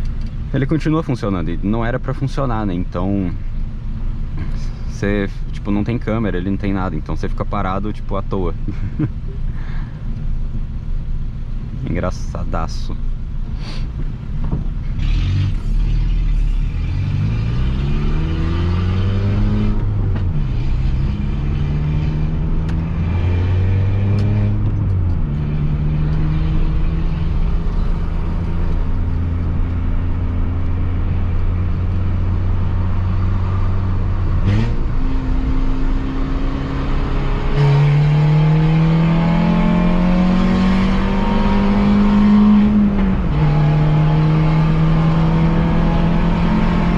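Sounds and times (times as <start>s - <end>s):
car engine accelerating through gears: 14.0s - 46.9s.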